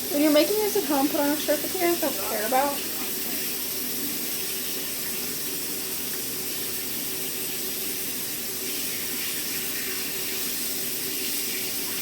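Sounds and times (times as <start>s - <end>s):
water running from faucet: 0.0s - 12.0s.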